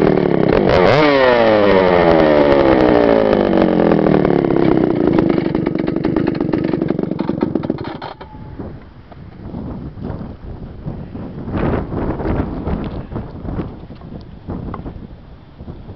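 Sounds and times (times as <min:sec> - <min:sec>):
chainsaw revving down and idling: 0:00.0 - 0:08.2.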